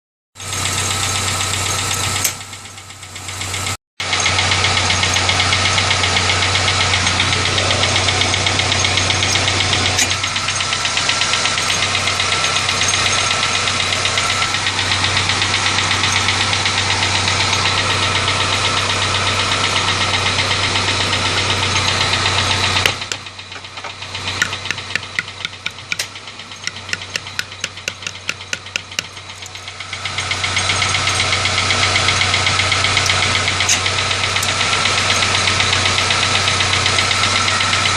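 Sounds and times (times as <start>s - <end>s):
car engine running: 0.4s - 37.9s
fast even ticking: 4.0s - 18.8s, 24.4s - 37.4s.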